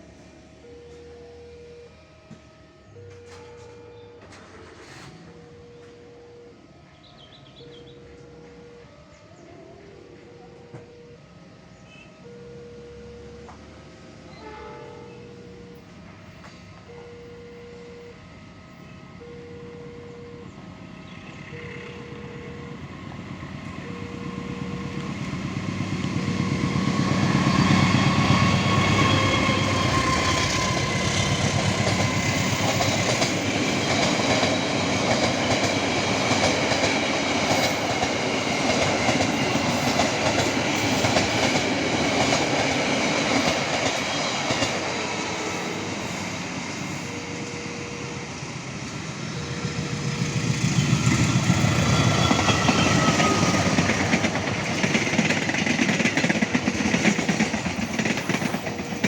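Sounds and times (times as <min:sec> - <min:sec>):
train wheels clattering over rail joints: 0:50.7 - 0:59.0.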